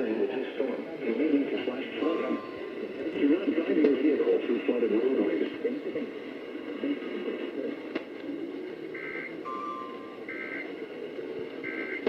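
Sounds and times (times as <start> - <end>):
faint muffled radio audio: 0.0 - 12.0
steady lower tone: 2.0 - 3.2, 9.4 - 11.2.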